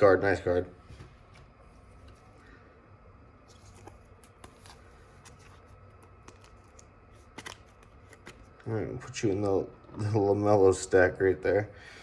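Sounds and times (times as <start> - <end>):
trading cards clicking and scraping: 3.5 - 8.7.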